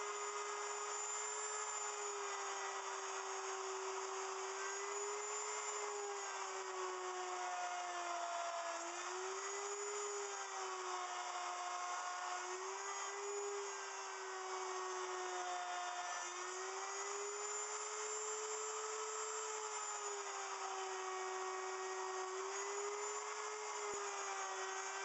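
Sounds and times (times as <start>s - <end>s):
wood router whining: 0.0s - 25.0s.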